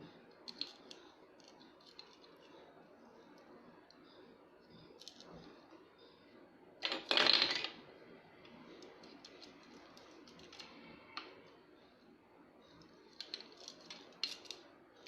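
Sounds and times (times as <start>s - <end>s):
plastic toy pieces clicking: 6.8s - 7.8s, 13.2s - 14.6s.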